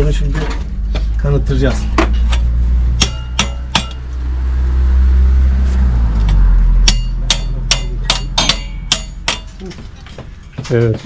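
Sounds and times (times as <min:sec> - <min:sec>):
engine humming: 0:00.0 - 0:11.0
sharp metal knocks: 0:01.7 - 0:04.2, 0:06.2 - 0:11.0.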